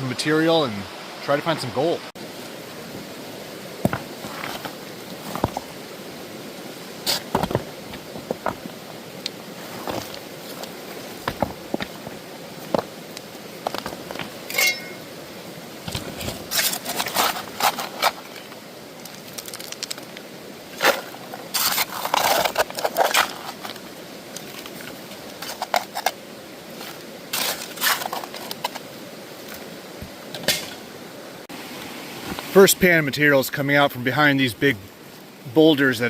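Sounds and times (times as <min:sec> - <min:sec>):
steady hiss: 0:00.0 - 0:36.0
stones clattering: 0:03.8 - 0:05.7, 0:07.1 - 0:08.7, 0:09.7 - 0:12.9, 0:15.9 - 0:20.2, 0:20.8 - 0:23.8
digging in gravel: 0:03.8 - 0:05.8, 0:07.0 - 0:15.0, 0:15.8 - 0:29.7.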